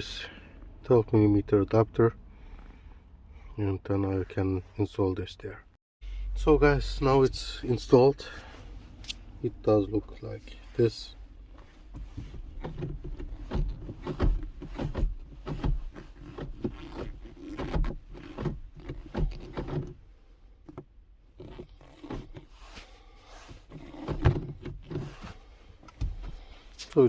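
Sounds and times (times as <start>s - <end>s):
gear lever clunks and clicks: 11.9s - 20.0s, 23.6s - 27.0s.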